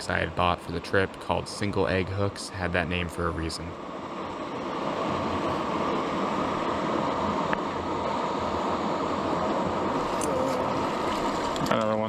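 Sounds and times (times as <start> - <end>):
river rushing over rocks: 3.8 - 11.8.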